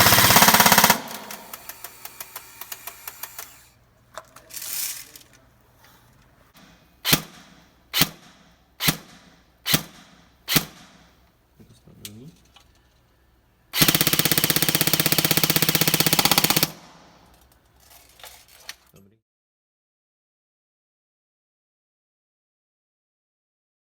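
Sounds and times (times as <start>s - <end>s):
airsoft rifle full-auto burst: 0.0s - 3.7s, 13.8s - 17.1s.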